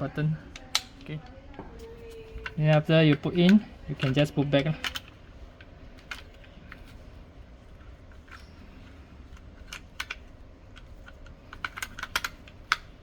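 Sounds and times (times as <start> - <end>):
plastic parts clicking: 0.5 - 1.3, 2.2 - 5.2, 9.3 - 13.0.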